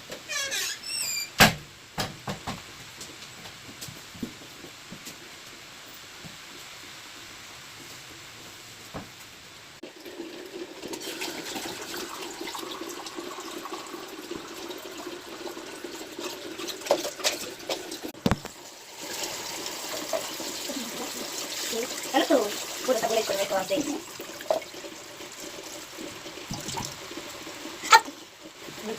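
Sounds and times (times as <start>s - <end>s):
water running: 9.8s - 28.9s.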